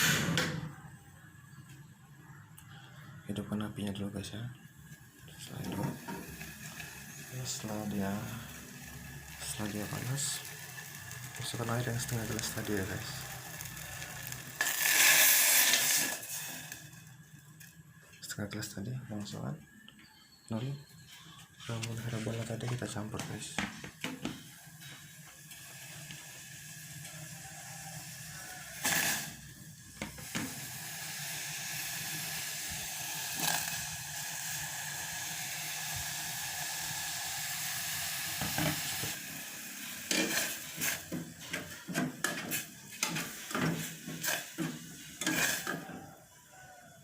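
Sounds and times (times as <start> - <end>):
water sizzling in hot pan: 5.4 - 17.8, 24.3 - 46.3
spoon scraping pan: 40.1 - 46.0.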